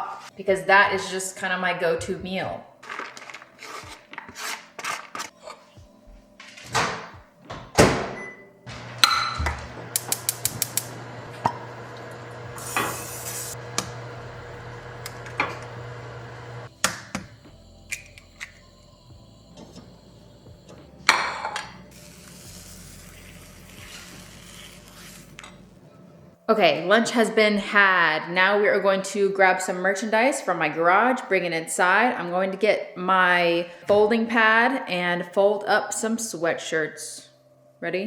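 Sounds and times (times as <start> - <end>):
microwave oven humming: 8.7 - 16.7.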